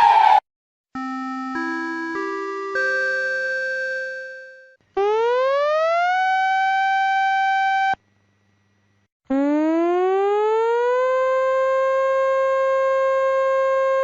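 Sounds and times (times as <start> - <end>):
buzzy rising siren tone: 5.0 - 8.0.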